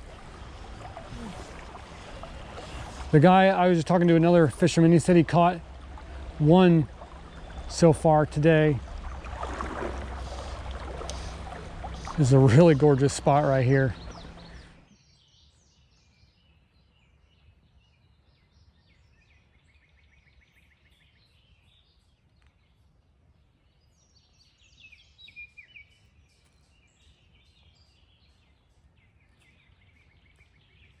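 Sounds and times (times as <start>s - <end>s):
low background rumble: 0.0s - 14.9s
songbirds chirping: 0.0s - 31.0s.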